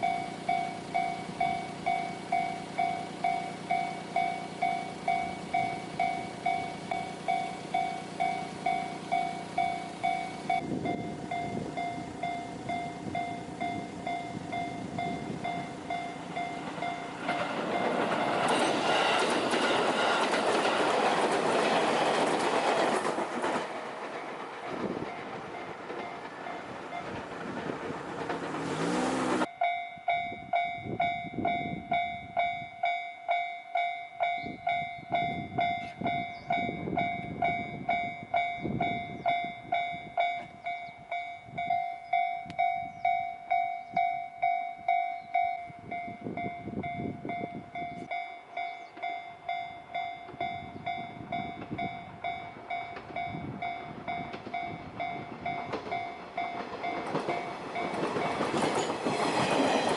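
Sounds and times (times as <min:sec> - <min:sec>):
level crossing bell ringing: 0:00.0 - 0:18.1, 0:29.5 - 0:58.9
low train rumble: 0:00.0 - 0:59.9
train rushing past: 0:00.0 - 0:59.9.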